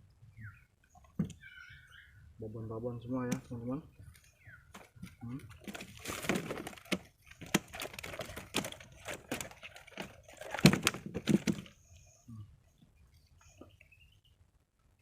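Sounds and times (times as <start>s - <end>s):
clattering knocks and thumps: 4.7s - 11.8s.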